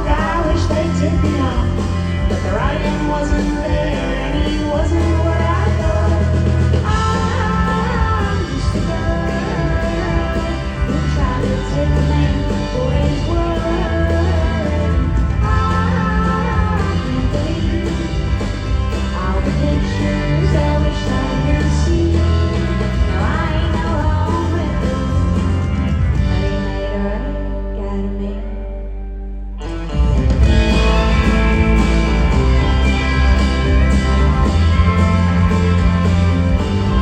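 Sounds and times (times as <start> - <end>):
woman singing: 0.0 - 25.6, 26.6 - 28.9
steady drum beat: 0.0 - 26.4, 30.3 - 37.0
guitars: 0.0 - 37.0.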